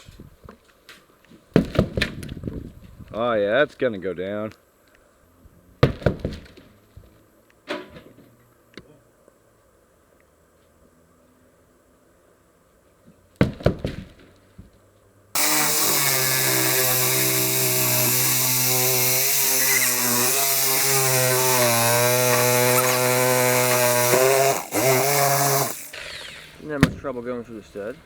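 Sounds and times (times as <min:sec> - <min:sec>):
chainsaw cutting wood: 0:15.4 - 0:27.1.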